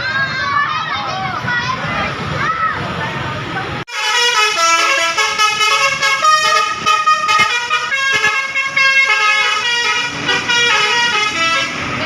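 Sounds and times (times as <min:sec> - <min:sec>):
multi-tone bus air horn melody: 0:03.9 - 0:12.0.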